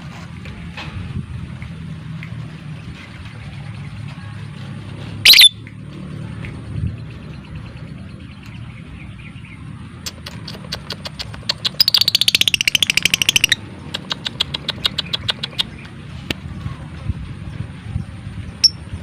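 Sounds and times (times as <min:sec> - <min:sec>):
lovebird chattering trill: 0:05.2 - 0:05.6, 0:10.0 - 0:15.8.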